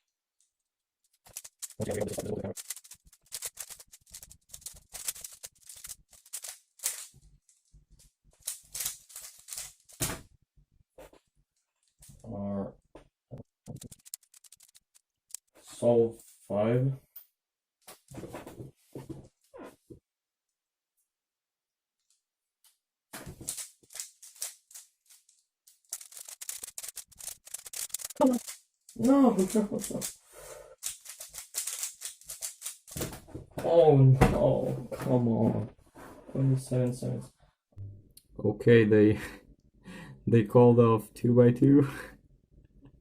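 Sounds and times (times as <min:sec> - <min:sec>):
puzzle cube clicking and rattling: 0:01.1 - 0:07.2, 0:08.4 - 0:10.0, 0:13.6 - 0:15.5, 0:23.3 - 0:30.2, 0:30.8 - 0:33.1.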